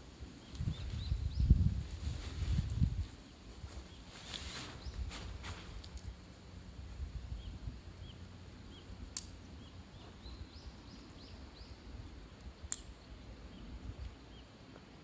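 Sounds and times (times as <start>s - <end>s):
sharp clicks: 9.1s - 9.4s, 12.4s - 13.1s.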